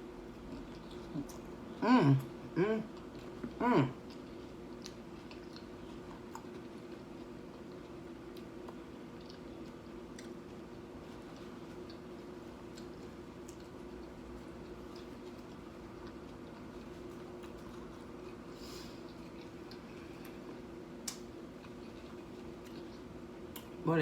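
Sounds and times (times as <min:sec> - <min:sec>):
steady low hum: 0:00.0 - 0:24.0
chewing crunchy chips: 0:00.2 - 0:23.8.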